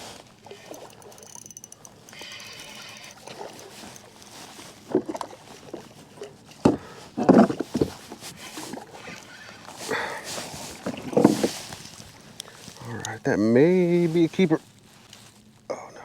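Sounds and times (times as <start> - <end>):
fish splashing in water: 0.4 - 6.2.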